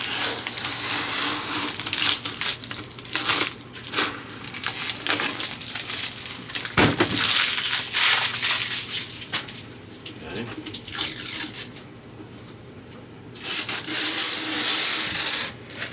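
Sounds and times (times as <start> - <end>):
plastic film peeling and crinkling: 0.0 - 10.0, 10.6 - 11.8.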